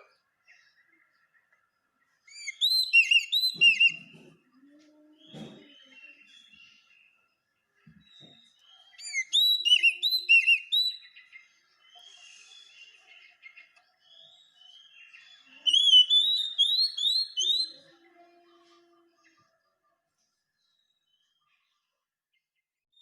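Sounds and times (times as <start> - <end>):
bird singing whistled notes: 2.3 - 4.1, 8.1 - 17.8.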